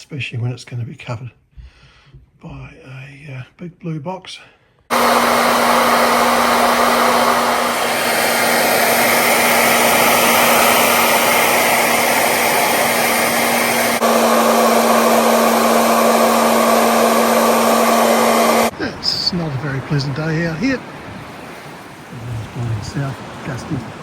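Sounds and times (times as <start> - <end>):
electric power sander on plywood: 4.9 - 18.8.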